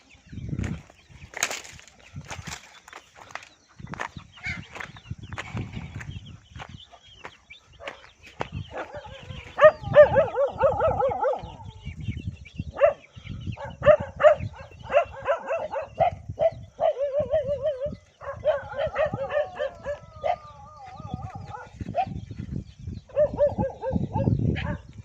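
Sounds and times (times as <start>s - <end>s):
dogs yelping barks: 7.8s - 11.9s, 12.7s - 22.2s, 23.1s - 24.9s.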